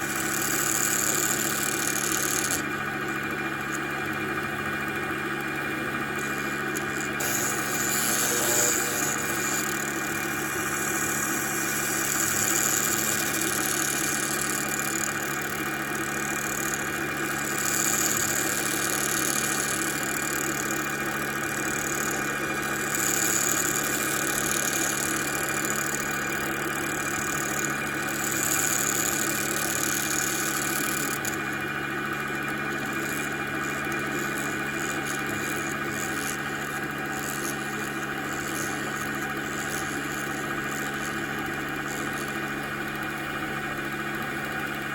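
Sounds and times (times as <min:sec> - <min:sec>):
hiss of lathe cutting: 0:00.0 - 0:02.6, 0:06.0 - 0:31.4
lathe motors whining: 0:00.0 - 0:44.9.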